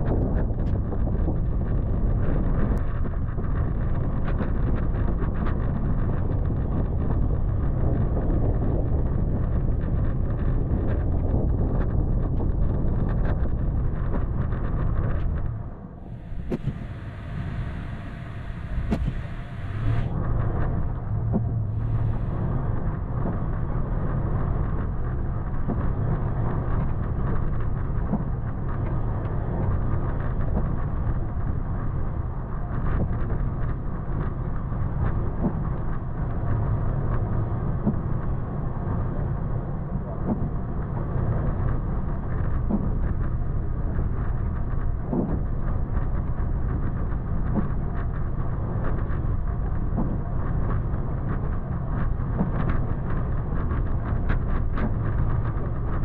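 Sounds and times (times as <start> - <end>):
truck engine rumbling: 15.3 - 24.5.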